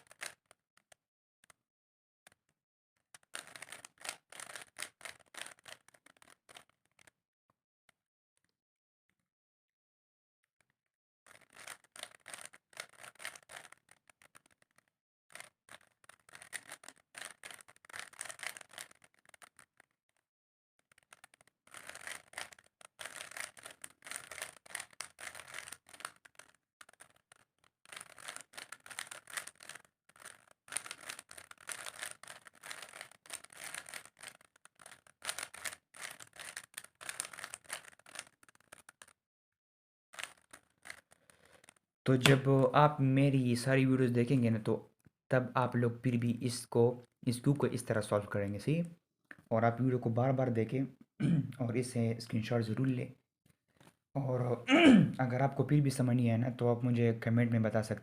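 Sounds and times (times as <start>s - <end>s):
puzzle cube clicking and scraping: 0.0s - 0.9s, 3.1s - 7.1s, 11.3s - 20.2s, 20.8s - 39.2s, 40.2s - 42.7s.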